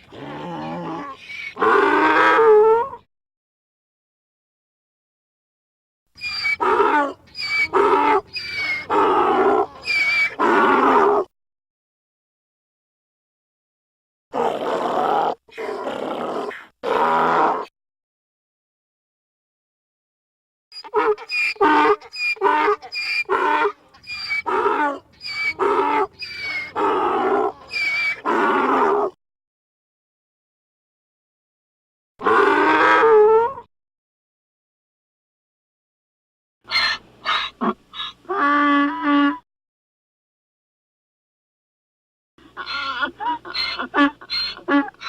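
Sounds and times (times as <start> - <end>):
donkey braying: 6.2 - 11.3, 20.8 - 29.2, 32.2 - 33.5, 36.7 - 39.4, 42.4 - 45.0.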